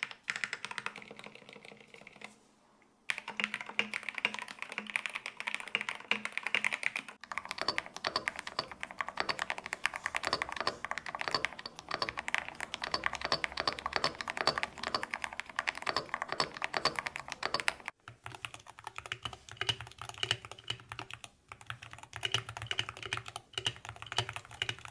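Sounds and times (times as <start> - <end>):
keyboard typing clacks: 0.0 - 2.2, 3.1 - 24.9.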